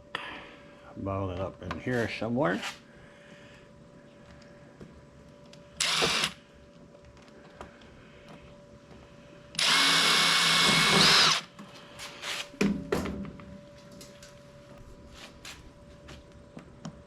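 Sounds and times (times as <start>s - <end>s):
power drill driving screw: 5.8s - 6.4s, 9.6s - 11.5s.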